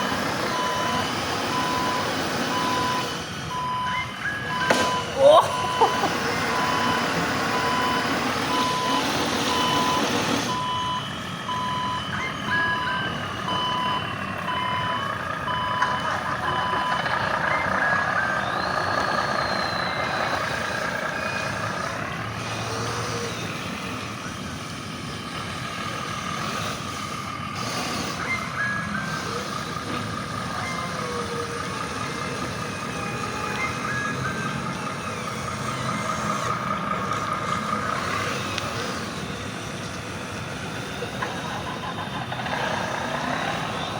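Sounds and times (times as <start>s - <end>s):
two-tone reversing beep: 0.0s - 21.9s, 28.0s - 31.2s, 32.4s - 36.6s
simulated diesel engine: 0.0s - 43.9s.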